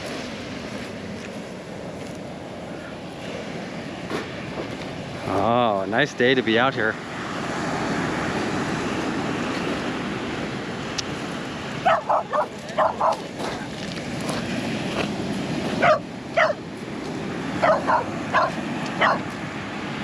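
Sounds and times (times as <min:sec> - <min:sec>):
ocean waves breaking: 0:00.0 - 0:20.0
dog barking in high yips: 0:11.8 - 0:13.3, 0:15.8 - 0:16.6, 0:17.6 - 0:19.3.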